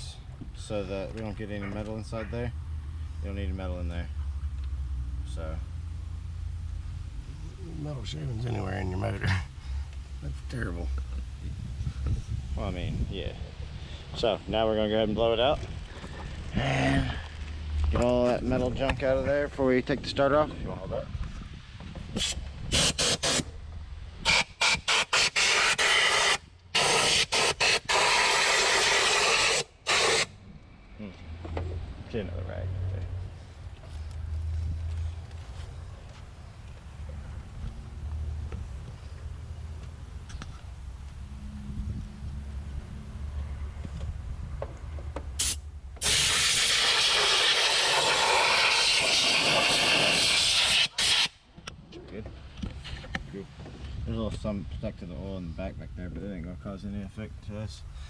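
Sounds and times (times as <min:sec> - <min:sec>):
compressed air blow gun hissing: 0:22.2 - 0:23.6, 0:24.2 - 0:30.3, 0:45.4 - 0:51.4.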